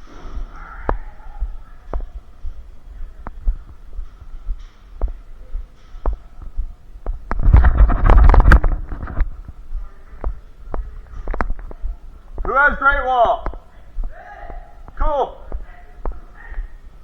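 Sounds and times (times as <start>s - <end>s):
rustling and clattering: 0.0s - 12.6s
footstep thuds: 0.0s - 17.0s.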